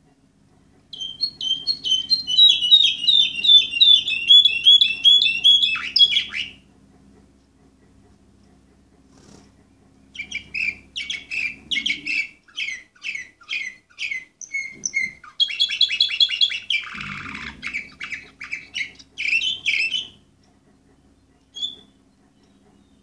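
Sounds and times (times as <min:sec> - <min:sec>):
canary rapid trill: 0:00.9 - 0:06.6, 0:10.1 - 0:20.3
canary singing: 0:00.9 - 0:06.7, 0:09.2 - 0:23.0.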